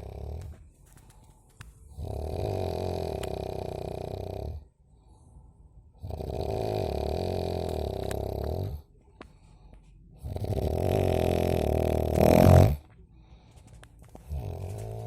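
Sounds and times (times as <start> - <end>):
person snoring: 0.0 - 0.5, 2.0 - 4.6, 6.0 - 8.9, 10.2 - 12.8, 14.3 - 15.0.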